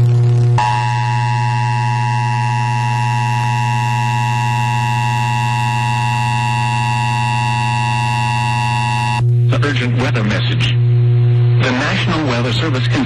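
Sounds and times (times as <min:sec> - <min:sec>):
low hum: 0:00.0 - 0:13.0
two-tone alert tone: 0:00.6 - 0:09.2.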